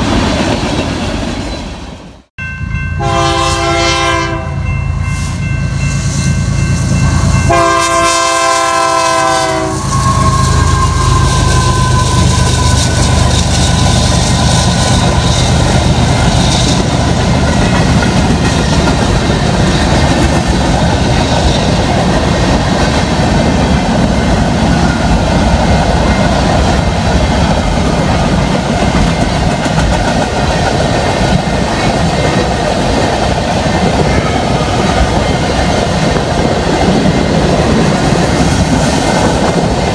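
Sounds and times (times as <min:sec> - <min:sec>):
rail cars rumbling on track: 0:00.0 - 0:39.9
locomotive horn blast: 0:03.0 - 0:04.7, 0:07.1 - 0:14.1.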